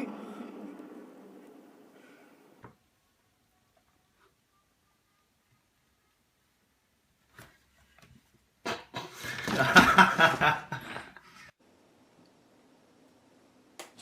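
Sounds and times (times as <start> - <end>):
person laughing: 9.1 - 11.2.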